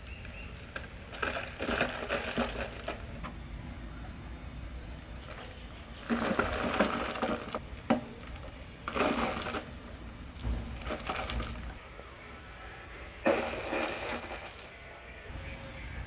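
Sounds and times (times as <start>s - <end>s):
dry clay crumbling: 0.0s - 11.8s.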